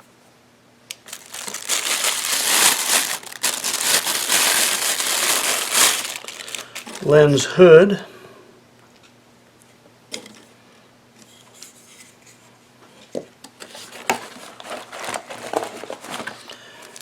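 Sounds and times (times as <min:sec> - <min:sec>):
plastic packaging rustling: 0:01.0 - 0:07.2, 0:13.7 - 0:17.0.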